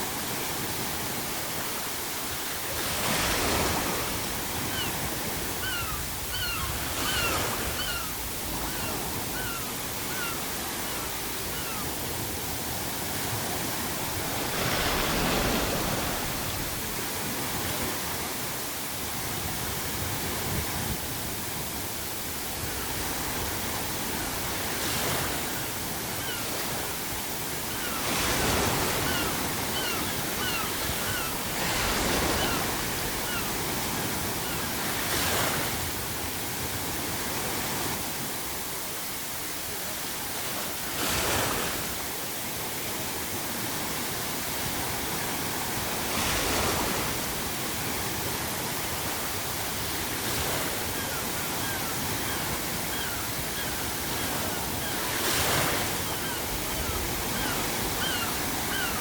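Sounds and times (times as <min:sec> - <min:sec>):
ocean waves breaking: 0:00.0 - 0:59.0
surf wash: 0:00.0 - 0:59.0
faint seagull calls: 0:04.6 - 0:12.1, 0:25.0 - 0:27.0, 0:27.6 - 0:35.4, 0:50.4 - 0:59.0.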